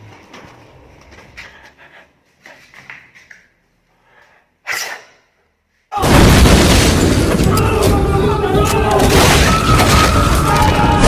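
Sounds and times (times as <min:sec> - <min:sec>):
person sneezing: 0:04.6 - 0:05.3
loud boom with crashing: 0:06.0 - 0:11.0.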